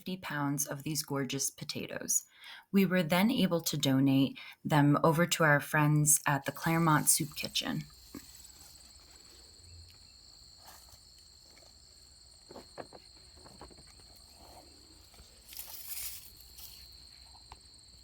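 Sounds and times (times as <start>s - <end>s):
insects trilling: 7.0s - 18.0s
rustling: 7.4s - 17.6s.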